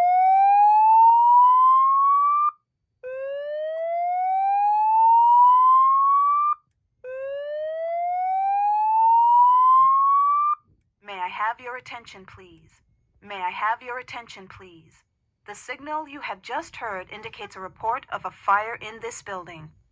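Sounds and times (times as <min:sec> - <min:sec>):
fire alarm whoop tone: 0:00.0 - 0:10.6.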